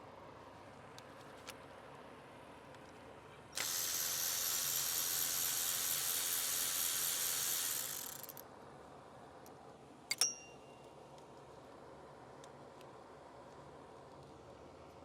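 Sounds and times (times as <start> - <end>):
power tool running: 3.6 - 8.4.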